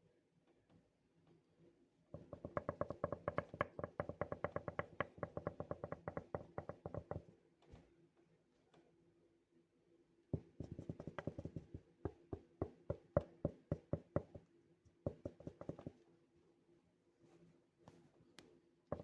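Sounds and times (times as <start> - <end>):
knocking on hard surface: 2.2 - 7.3, 10.4 - 14.5, 15.1 - 16.0.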